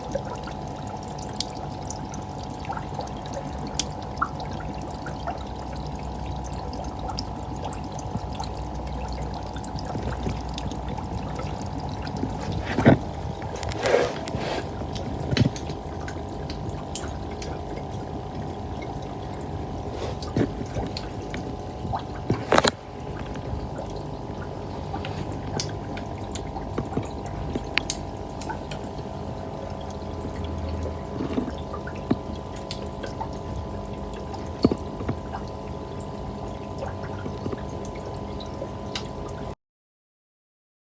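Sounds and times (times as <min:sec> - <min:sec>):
aquarium equipment hum: 0:00.0 - 0:39.6
fish gulping bubble pops: 0:00.1 - 0:39.4.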